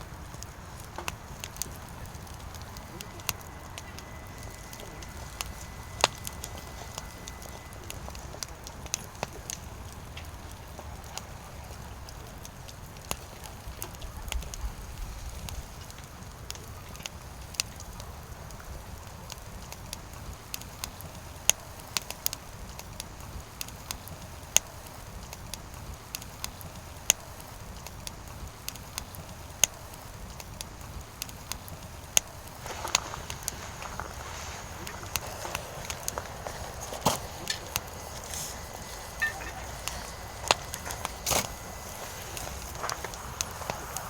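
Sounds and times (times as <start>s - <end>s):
steady low rumble: 0.0s - 13.1s, 32.4s - 44.0s
firewood crackling and popping: 0.0s - 44.0s.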